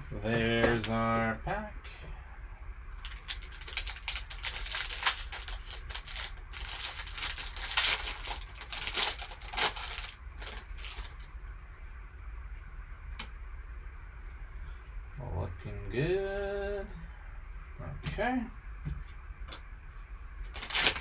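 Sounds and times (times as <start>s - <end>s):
wrapper tearing and crinkling: 3.0s - 11.3s, 20.5s - 21.0s.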